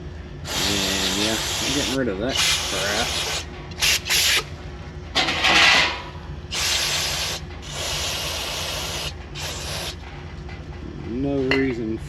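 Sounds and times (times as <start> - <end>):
aerosol can spraying: 0.5 - 4.4, 6.5 - 10.0.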